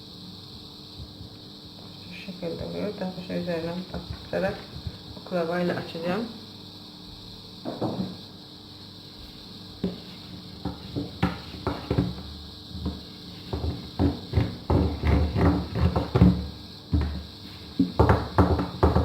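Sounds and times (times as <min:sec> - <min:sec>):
rolling pin rolling dough: 0:09.8 - 0:19.0.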